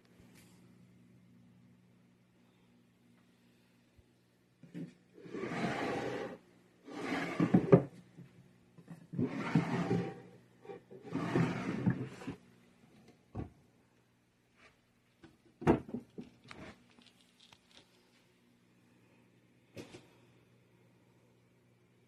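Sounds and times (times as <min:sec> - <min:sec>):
wooden cabinet sliding scrapes: 0:05.2 - 0:07.9, 0:09.2 - 0:12.4.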